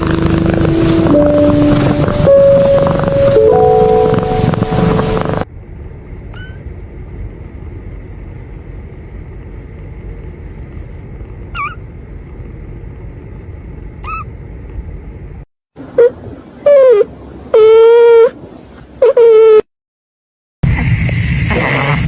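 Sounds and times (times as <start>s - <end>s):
music track: 0.0s - 5.4s
steady low rumble: 0.0s - 15.5s
cat squeaky chirps: 6.3s - 6.7s, 11.5s - 11.8s, 14.0s - 14.3s.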